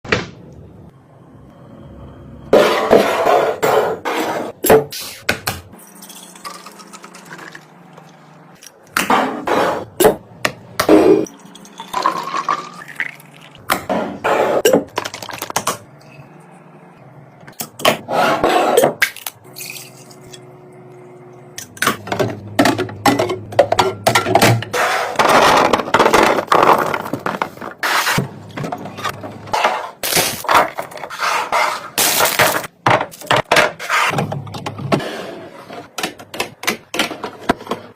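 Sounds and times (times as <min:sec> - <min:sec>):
containers clattering into fridge: 0:21.6 - 0:27.8.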